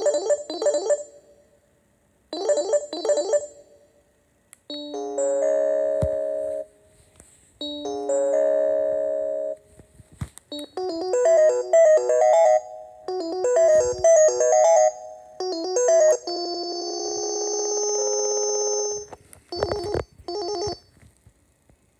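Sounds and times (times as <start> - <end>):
chiming chord ringtone: 0.0 - 1.4, 2.4 - 3.8, 4.7 - 6.7, 7.6 - 9.6, 10.5 - 20.9
fast electronic ringtone melody: 0.0 - 1.4, 2.4 - 3.7, 4.7 - 6.6, 10.5 - 20.8
trilling phone ring: 0.0 - 1.4, 2.4 - 3.8, 10.5 - 21.0.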